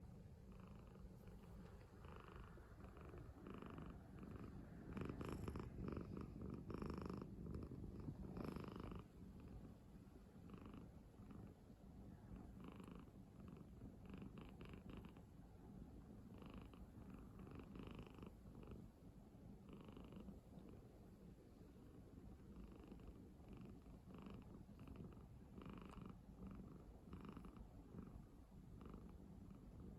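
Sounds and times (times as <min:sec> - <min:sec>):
cat snoring: 0:00.5 - 0:09.6, 0:10.4 - 0:11.4, 0:12.4 - 0:15.2, 0:16.3 - 0:18.8, 0:19.6 - 0:20.3, 0:22.5 - 0:28.1.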